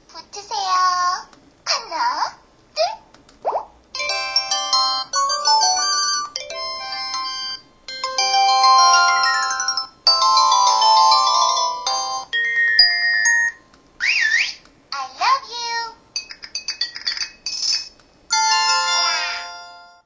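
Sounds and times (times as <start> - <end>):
phone electronic chime melodies: 4.0 - 13.6, 18.3 - 20.0.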